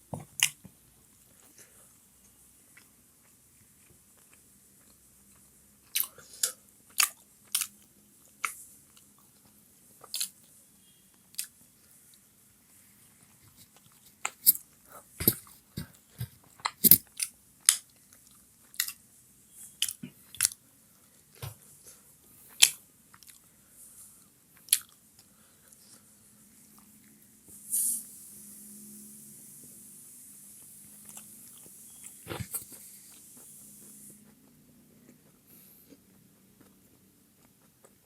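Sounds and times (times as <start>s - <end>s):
chewing with wet mouth clicks: 2.7s - 10.4s, 24.6s - 25.3s.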